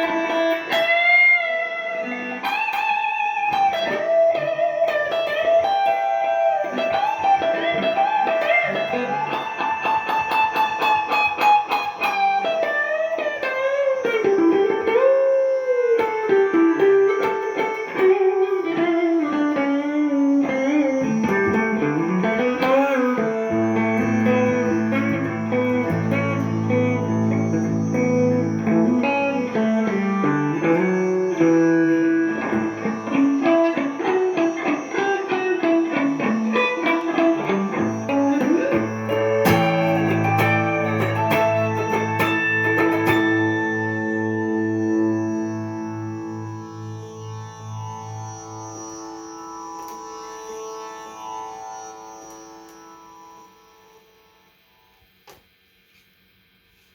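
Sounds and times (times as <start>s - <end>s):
electric guitar melody with bends: 0.0s - 56.1s.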